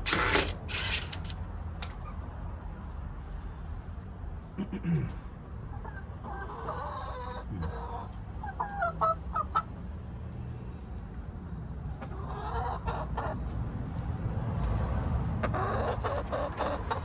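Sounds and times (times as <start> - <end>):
hens clucking: 5.8 - 9.6, 15.4 - 17.0.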